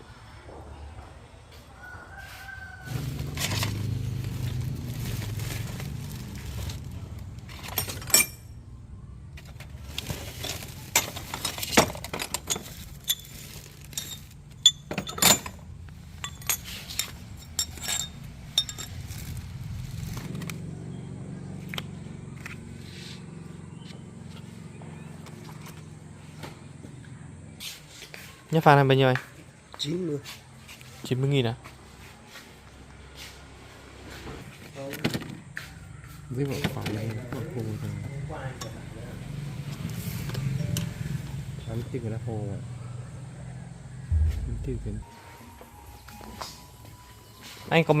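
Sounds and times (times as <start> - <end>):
sharp clinks and knocks: 7.5 - 8.6, 10.9 - 19.1
low steady hum: 44.1 - 47.3.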